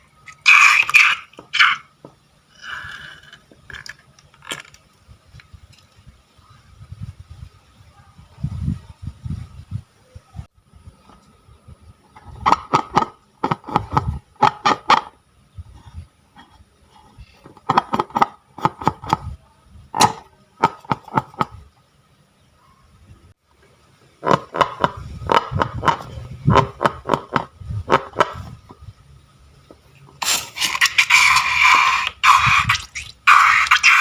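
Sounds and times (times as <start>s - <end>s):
short hiss: 30.2s - 33.7s.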